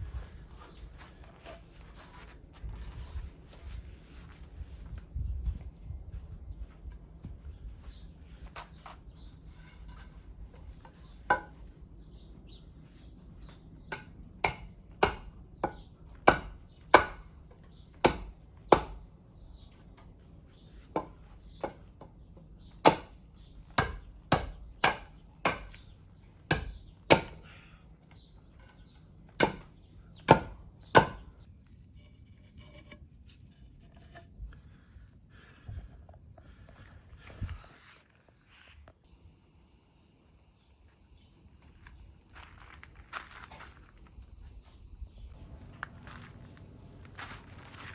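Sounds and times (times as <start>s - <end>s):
faint high insect chirring: 0.0s - 47.9s
axe chopping wood: 13.9s - 17.4s, 18.0s - 19.1s, 20.9s - 21.9s, 22.8s - 25.9s, 26.5s - 27.5s, 29.4s - 31.4s.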